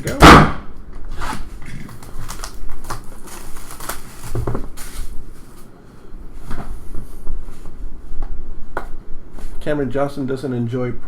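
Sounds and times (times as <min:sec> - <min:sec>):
wrapping and cardboard crinkling: 0:01.2 - 0:05.8.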